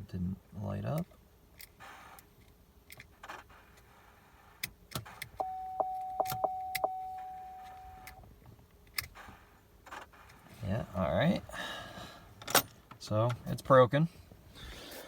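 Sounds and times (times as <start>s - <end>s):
key clicking in ignition: 4.6s - 8.2s
electronic warning tone: 5.4s - 8.1s.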